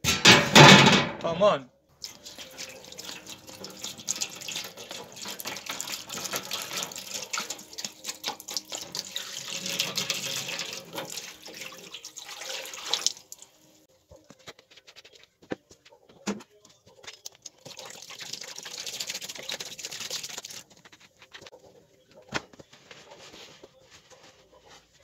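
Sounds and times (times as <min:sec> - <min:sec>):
water running and splashing: 0:02.0 - 0:13.9, 0:17.0 - 0:21.5.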